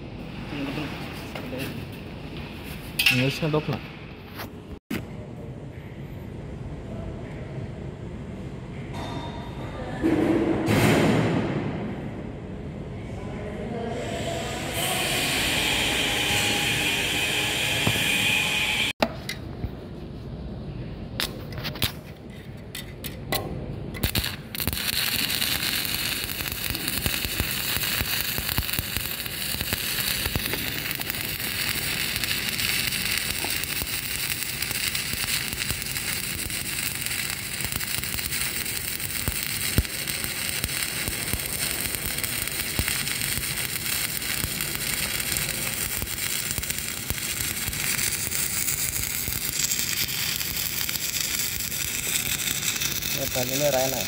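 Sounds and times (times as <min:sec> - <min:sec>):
welding arc crackling: 0:24.0 - 0:54.0.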